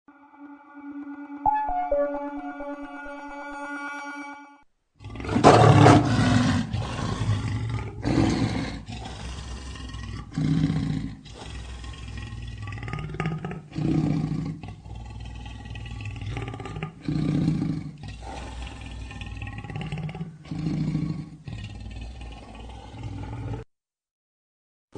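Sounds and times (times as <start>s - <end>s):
lion roaring: 5.0s - 23.6s.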